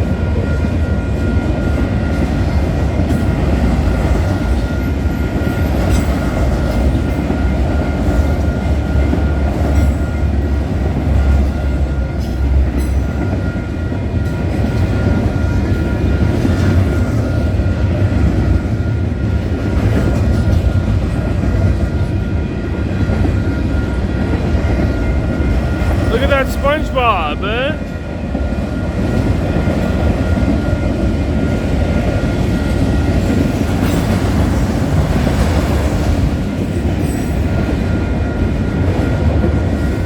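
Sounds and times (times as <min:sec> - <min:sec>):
steel wheels rumbling on rail: 0:00.0 - 0:26.1.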